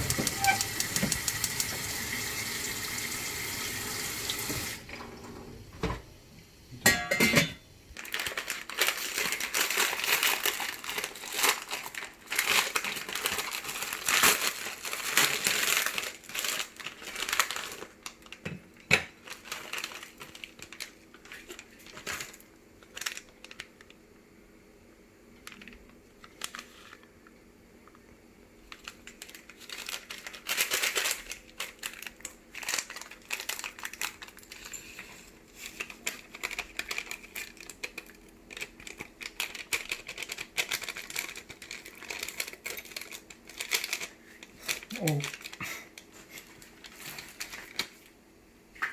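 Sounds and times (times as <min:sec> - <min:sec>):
plastic wrapper crinkling: 0:08.0 - 0:24.0, 0:25.4 - 0:27.3, 0:28.6 - 0:48.2.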